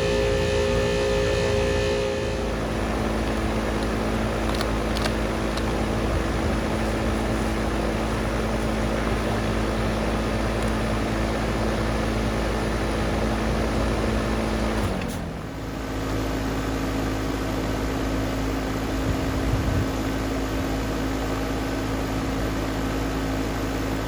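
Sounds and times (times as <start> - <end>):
air conditioner fan humming: 0.0 - 16.7.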